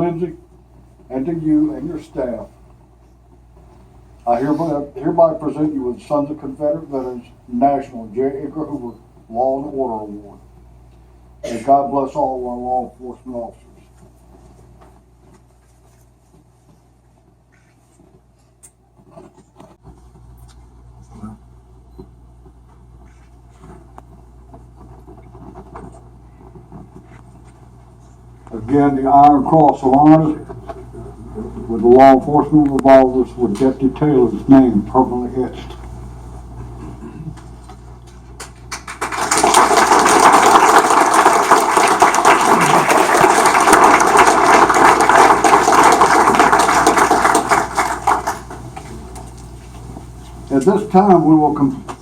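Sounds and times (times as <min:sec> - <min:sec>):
audience applauding: 0:38.4 - 0:48.9.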